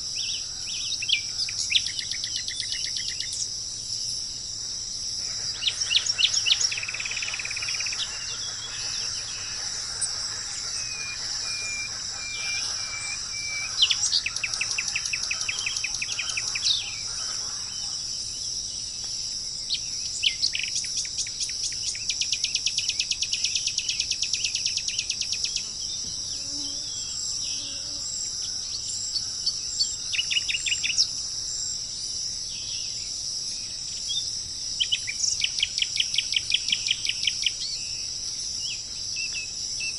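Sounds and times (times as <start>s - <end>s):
insect chorus: 0.0s - 39.9s
bird trills: 5.2s - 18.2s
wild birds calling: 5.2s - 18.6s.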